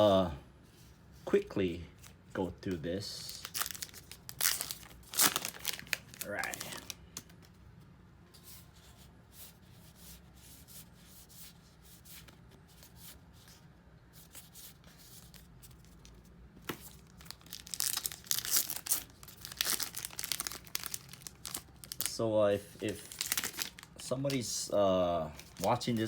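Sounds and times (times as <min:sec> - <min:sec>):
wrapper crinkling and tearing: 0:03.1 - 0:07.4, 0:16.8 - 0:22.2, 0:22.8 - 0:24.5, 0:25.3 - 0:26.0.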